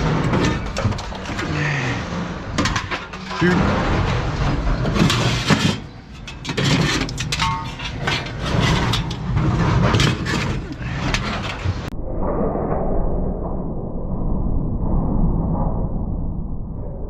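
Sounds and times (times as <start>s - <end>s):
scrap metal clanking: 0.0s - 11.9s
low rumble: 0.0s - 17.0s.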